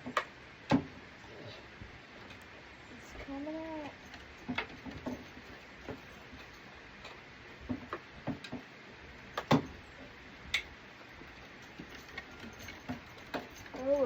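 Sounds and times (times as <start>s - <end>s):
hand tools clinking on metal: 10.6s - 14.0s.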